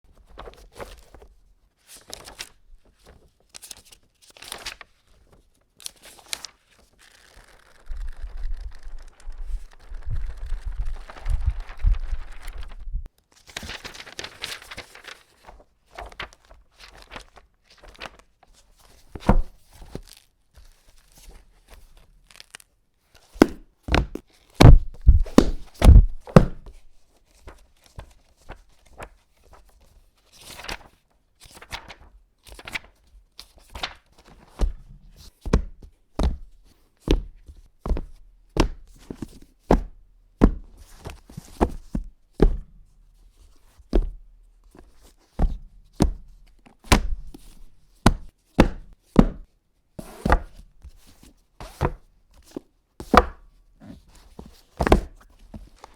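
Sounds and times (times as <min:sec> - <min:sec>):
paper rustling: 0:00.2 - 0:21.2, 0:22.2 - 0:29.8, 0:30.4 - 0:34.8
knocks on a book: 0:19.2 - 0:19.5, 0:23.4 - 0:26.8, 0:35.5 - 0:36.4, 0:37.9 - 0:38.8, 0:46.9 - 0:47.4, 0:48.0 - 0:49.5
book thumping: 0:19.2 - 0:19.6, 0:23.4 - 0:26.9, 0:46.8 - 0:50.6, 0:54.8 - 0:55.7.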